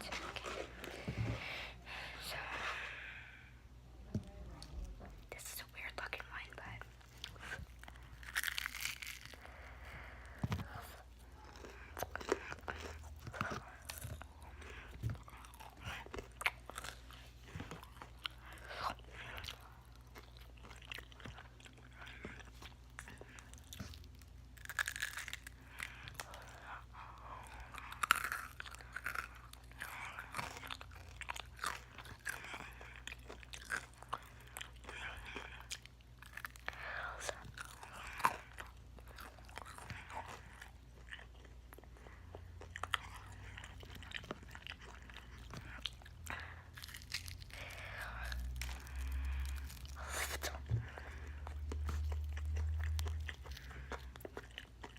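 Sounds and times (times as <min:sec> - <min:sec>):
faint low hum: 0:00.0 - 0:54.9
crispy chicken being chewed: 0:06.6 - 0:54.9.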